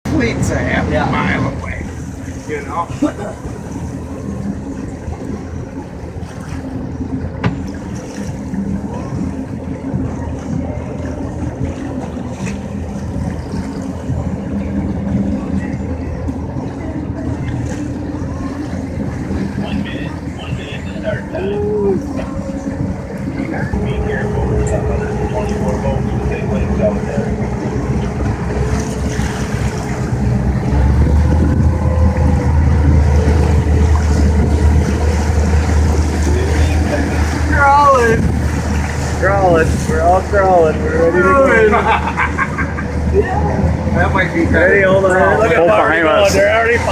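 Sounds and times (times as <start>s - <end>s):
boat engines idling: 0.0s - 46.9s
water noise: 0.0s - 46.9s
wind: 0.0s - 46.9s.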